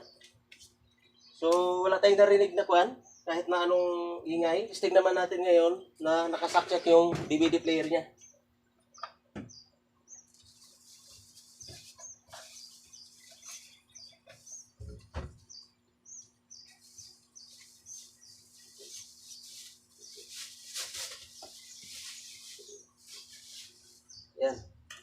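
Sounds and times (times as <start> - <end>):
small bird chirping: 2.5 - 4.0, 6.4 - 24.8
low thump: 14.8 - 15.4.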